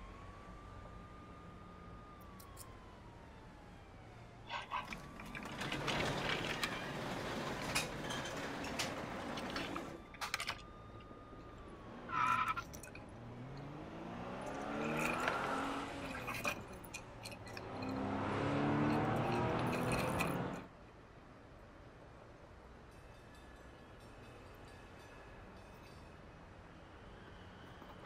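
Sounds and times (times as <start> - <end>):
car engine sounds rising and falling: 11.2 - 20.7.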